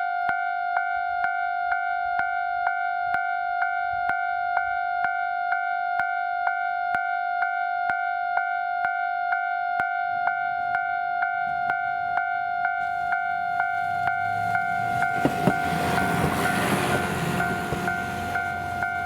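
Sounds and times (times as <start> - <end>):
level crossing warning bell: 9.4 - 19.0
diesel railcar rumble: 11.5 - 19.0.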